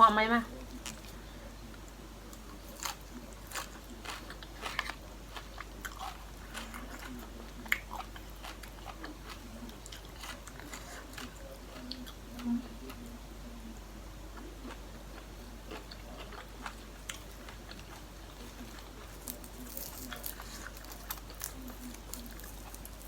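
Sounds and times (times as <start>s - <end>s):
person chewing food: 0.5s - 23.0s
small crunches: 2.3s - 12.1s, 15.7s - 23.0s.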